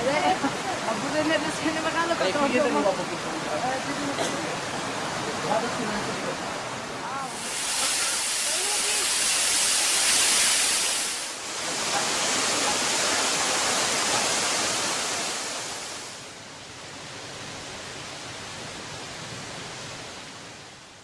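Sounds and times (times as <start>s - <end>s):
waterfall rushing: 0.0s - 16.4s.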